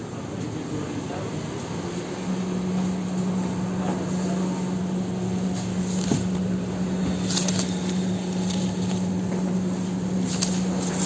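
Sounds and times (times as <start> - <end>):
paint mixing machine humming: 0.0 - 11.0.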